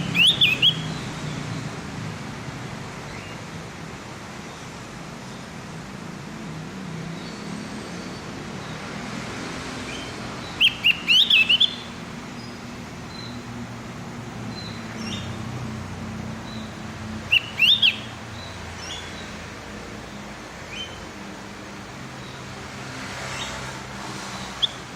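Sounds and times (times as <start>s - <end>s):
bird chirping: 0.0s - 1.4s, 9.9s - 13.6s, 14.5s - 15.5s, 16.3s - 19.4s, 20.7s - 21.1s, 24.6s - 24.9s.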